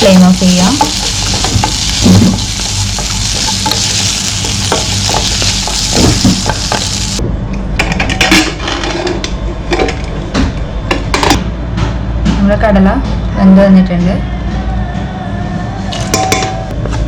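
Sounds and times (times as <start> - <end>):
onions sizzling in hot oil: 0.0 - 7.2.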